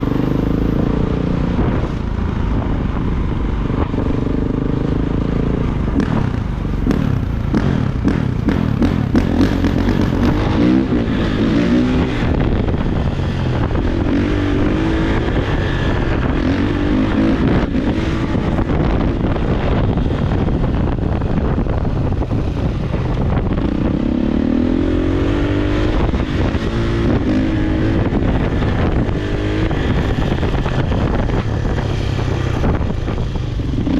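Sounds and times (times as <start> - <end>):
wind rushing on microphone: 0.0 - 33.9
dirt bike engine revving: 6.8 - 12.8.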